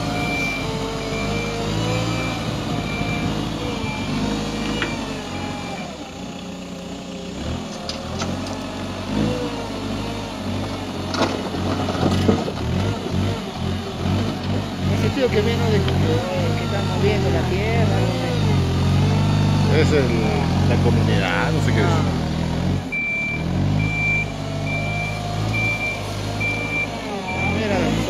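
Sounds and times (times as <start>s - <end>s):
electronic beeps: 0.0s - 5.9s, 22.9s - 28.0s
backhoe engine running: 0.0s - 28.0s.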